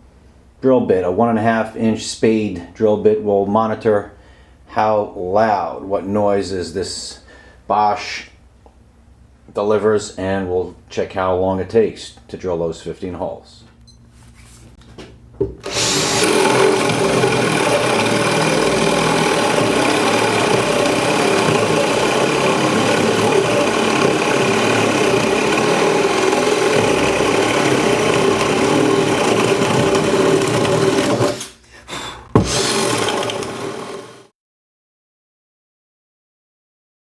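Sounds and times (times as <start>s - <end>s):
drill whirring through wood: 15.4s - 34.3s.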